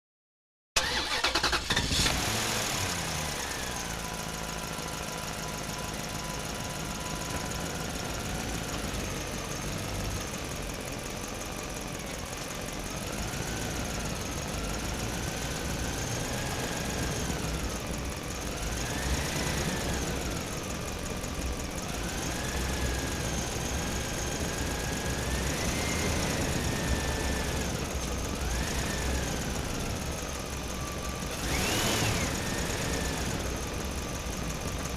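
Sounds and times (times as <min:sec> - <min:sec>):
truck engine starter cranking: 0:00.8 - 0:02.5
truck engine revving: 0:00.8 - 0:10.6, 0:12.8 - 0:34.9.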